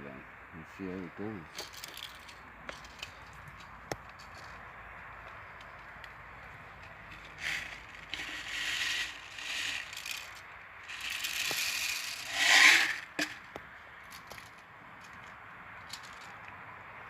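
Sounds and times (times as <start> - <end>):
rattling and scraping: 1.5 - 4.6, 6.8 - 16.4.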